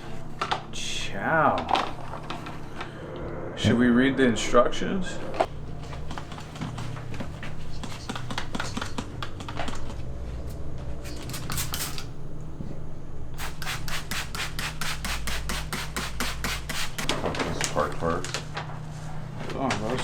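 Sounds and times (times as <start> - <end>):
scrubbing strokes on a surface: 5.5 - 9.1, 13.4 - 17.1.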